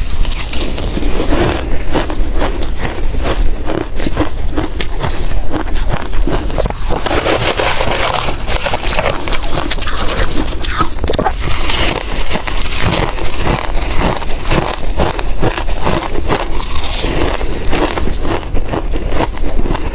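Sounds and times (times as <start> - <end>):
ice crunching while chewed: 0.0 - 19.9.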